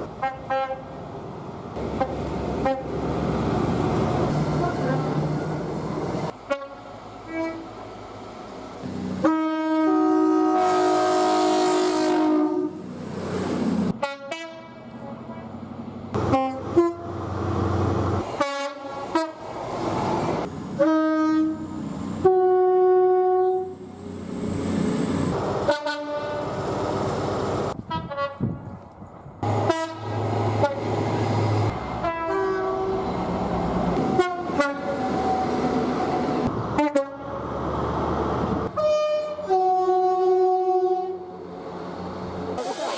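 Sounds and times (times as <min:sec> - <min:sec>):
passing train rail noise: 0:00.0 - 0:42.9
two-tone train horns: 0:00.2 - 0:00.9, 0:01.9 - 0:03.0, 0:04.3 - 0:05.3, 0:06.4 - 0:07.8, 0:08.8 - 0:12.9, 0:13.9 - 0:15.5, 0:16.2 - 0:17.2, 0:18.2 - 0:19.5, 0:20.8 - 0:23.8, 0:25.6 - 0:26.6, 0:27.9 - 0:28.6, 0:29.4 - 0:31.1, 0:32.0 - 0:33.1, 0:34.0 - 0:35.6, 0:36.8 - 0:37.4, 0:38.7 - 0:41.4.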